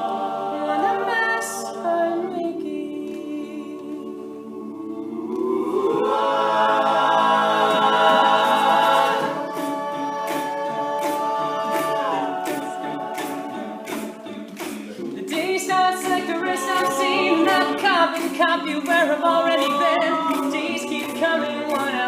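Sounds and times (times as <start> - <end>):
male a cappella chords: 0.0 - 22.0
percussive beat: 6.8 - 22.0.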